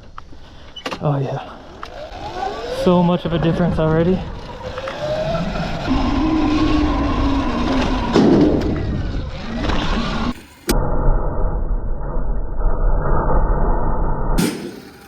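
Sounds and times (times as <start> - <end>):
tyre noise: 0.0 - 10.7
electric motor whine: 1.6 - 10.7.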